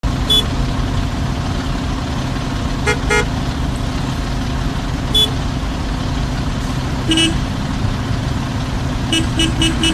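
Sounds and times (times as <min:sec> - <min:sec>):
car engines rumbling: 0:00.0 - 0:09.9
car horn toots: 0:00.3 - 0:00.5, 0:02.8 - 0:03.3, 0:05.1 - 0:05.4, 0:07.1 - 0:07.4, 0:09.1 - 0:09.9.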